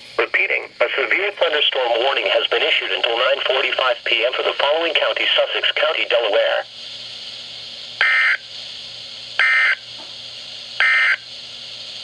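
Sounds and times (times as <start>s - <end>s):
radio hiss: 0.0s - 9.9s.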